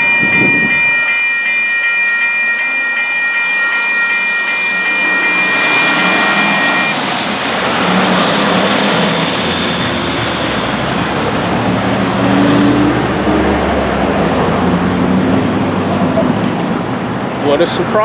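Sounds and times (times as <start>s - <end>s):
railroad crossing bell ringing: 0.0s - 16.5s
passing vehicles rushing: 4.9s - 18.0s.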